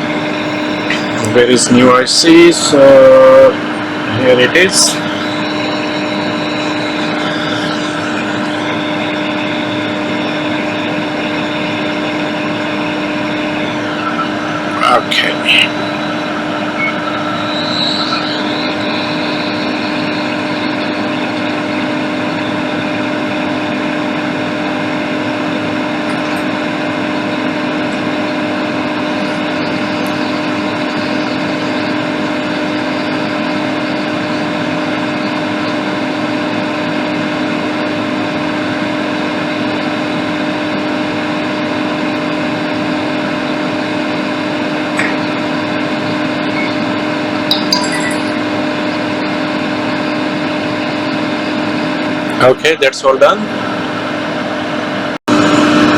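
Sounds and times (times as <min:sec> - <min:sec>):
hot air station blowing: 0:00.0 - 0:55.9.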